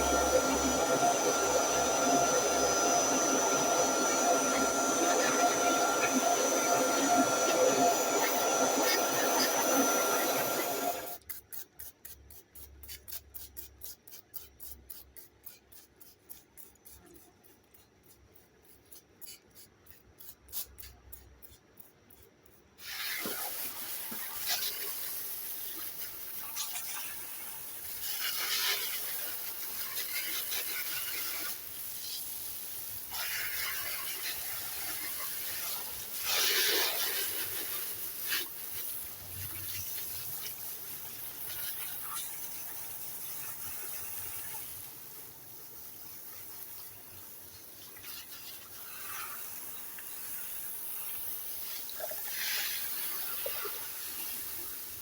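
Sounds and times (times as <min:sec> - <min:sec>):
vacuum blowing air: 0:00.0 - 0:11.2.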